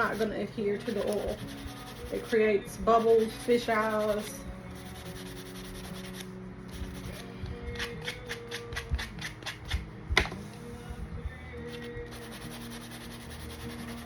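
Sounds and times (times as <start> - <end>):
pens clicking and rubbing: 0.0 - 2.4
soft background music: 0.0 - 14.0.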